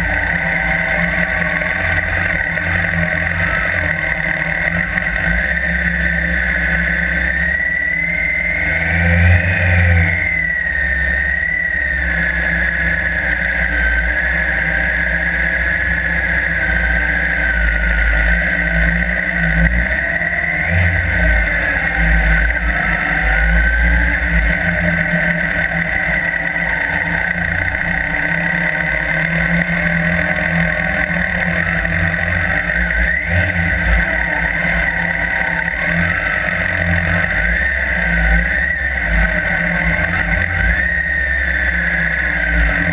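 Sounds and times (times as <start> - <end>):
motorcycle engine revving: 0.0 - 42.9.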